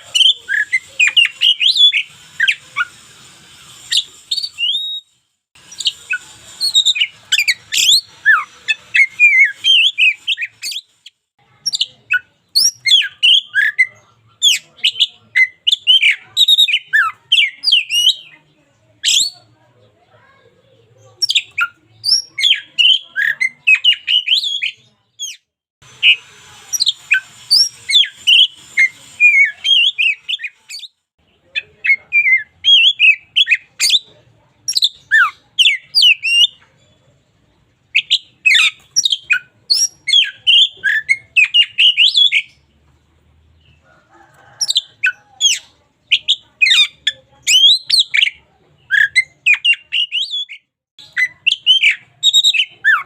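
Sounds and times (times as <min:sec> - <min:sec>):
bird singing whistled notes: 0:00.0 - 0:03.0, 0:03.8 - 0:11.0, 0:11.7 - 0:18.3, 0:34.7 - 0:36.6, 0:37.9 - 0:42.6, 0:48.9 - 0:53.0.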